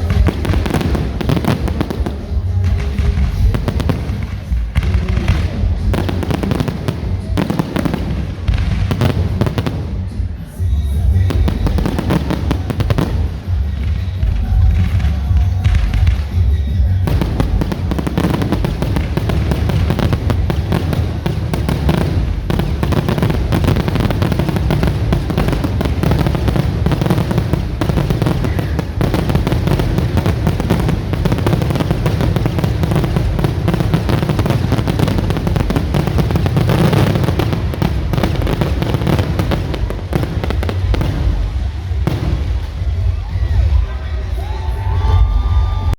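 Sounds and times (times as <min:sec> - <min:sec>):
fireworks bangs and crackles: 0:00.0 - 0:45.9
heavy low rumble: 0:17.0 - 0:44.3.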